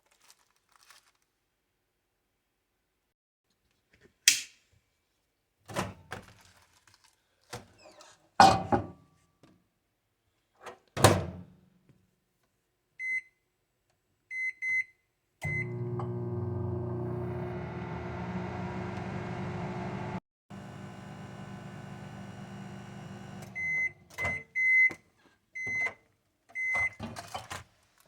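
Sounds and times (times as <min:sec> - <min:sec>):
microwave oven humming: 0:15.4 - 0:24.1.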